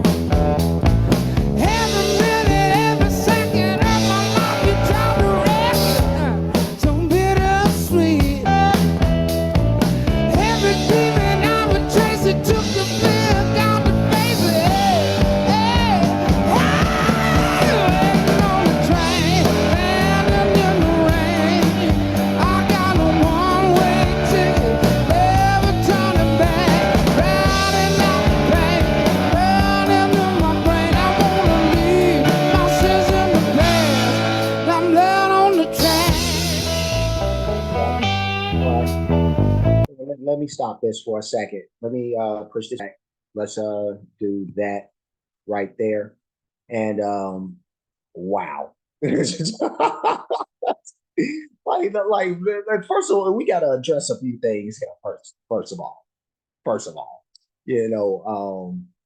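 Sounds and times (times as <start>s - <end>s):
rock band with electric guitar: 0.0s - 39.9s
man singing: 1.4s - 9.0s, 10.2s - 36.7s.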